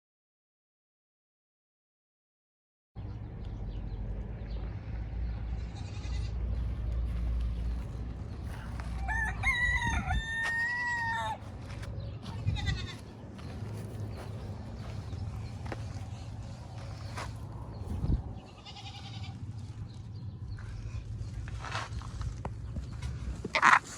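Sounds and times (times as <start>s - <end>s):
steady low rumble: 3.0s - 23.6s
rooster crowing: 8.7s - 11.5s.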